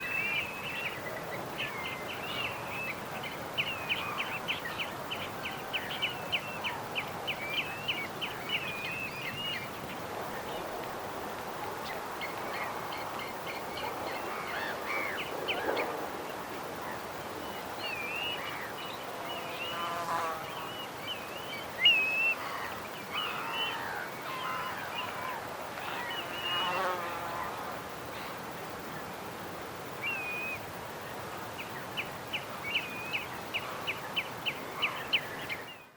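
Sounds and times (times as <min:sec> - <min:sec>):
steady background hiss: 0:00.0 - 0:35.9
water birds calling: 0:20.6 - 0:26.8.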